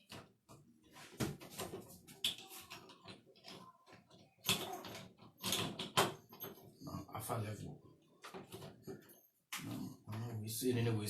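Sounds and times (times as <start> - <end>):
lock parts clicking and knocking: 2.2 - 6.8.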